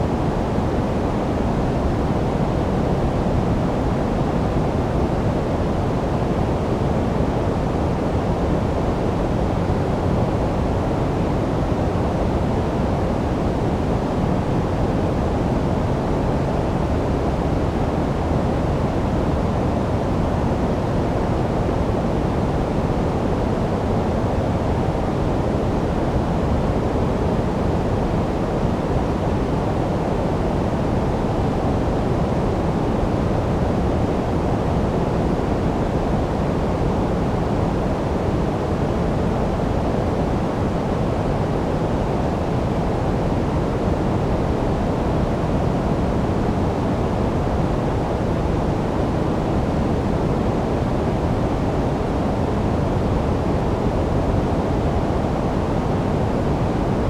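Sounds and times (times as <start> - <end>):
low-weighted noise hiss: 0.0 - 57.0.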